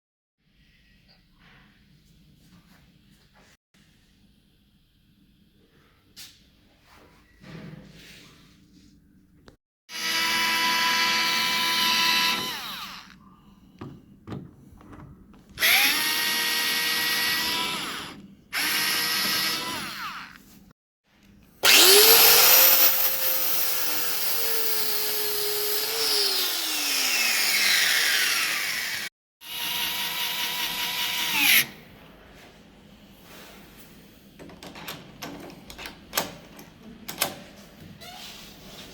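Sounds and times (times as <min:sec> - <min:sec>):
power drill motor whine: 0:09.9 - 0:13.2, 0:15.6 - 0:20.4, 0:21.6 - 0:31.7.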